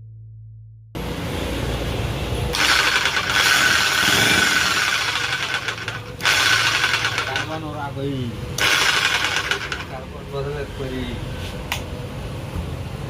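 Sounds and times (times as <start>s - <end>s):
demolition hammer running with whine: 2.4s - 10.2s.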